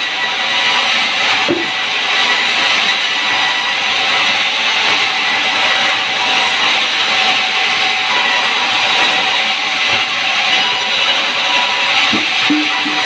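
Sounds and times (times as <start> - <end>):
sawmill machinery whine: 0.0 - 13.0.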